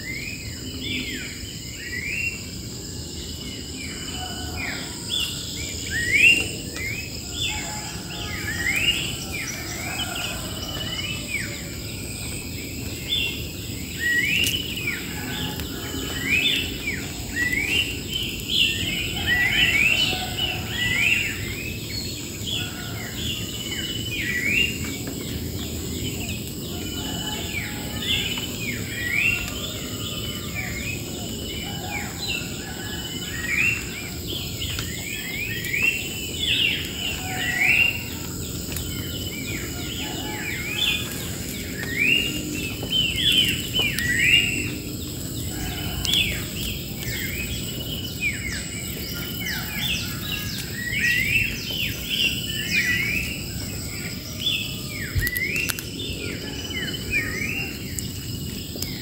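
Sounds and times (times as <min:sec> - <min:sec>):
wild birds chirping: 0:00.0 - 0:59.0.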